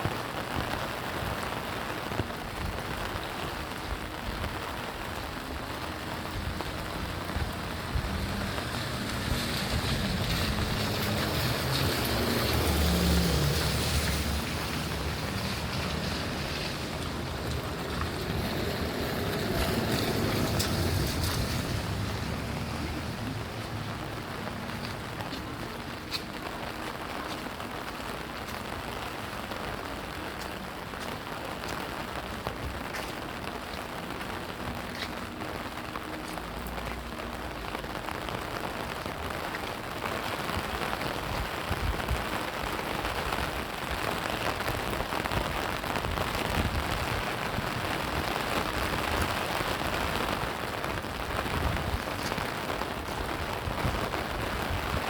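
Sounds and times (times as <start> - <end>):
steady rain falling: 0.0 - 55.0
low rumble: 6.2 - 25.8.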